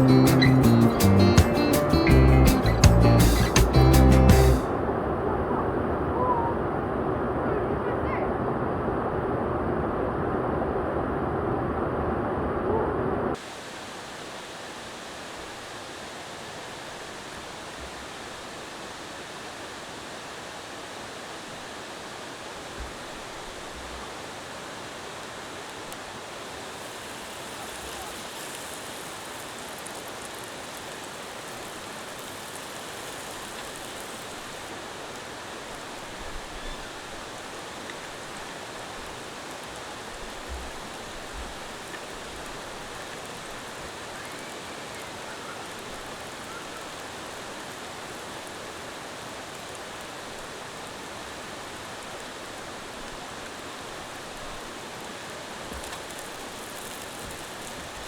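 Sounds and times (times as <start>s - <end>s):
water rushing over rocks: 13.0s - 58.0s.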